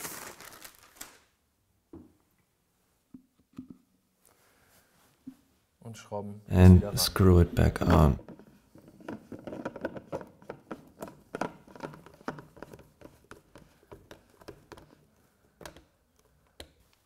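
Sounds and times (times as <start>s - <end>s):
filter casing clicking and scraping: 7.8s - 16.7s.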